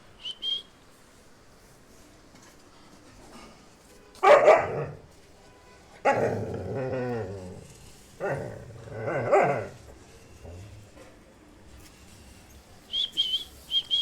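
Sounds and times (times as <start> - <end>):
dog barking: 4.2 - 5.0, 6.0 - 6.4, 8.2 - 9.8.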